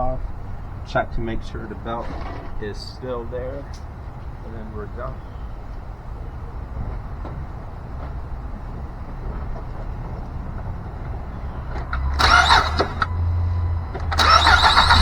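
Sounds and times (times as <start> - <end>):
starter motor cranking: 1.4 - 2.9, 11.7 - 13.3, 13.9 - 15.0
car engine running: 10.8 - 15.0.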